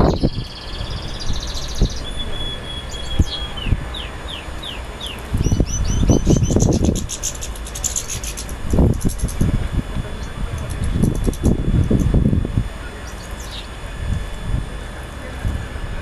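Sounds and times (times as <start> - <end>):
birds singing and calling: 0.0 - 12.2, 12.9 - 14.2.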